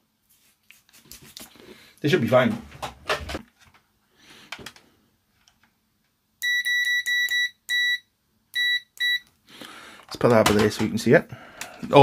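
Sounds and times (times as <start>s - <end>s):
multimeter continuity beeps: 6.4s - 9.3s.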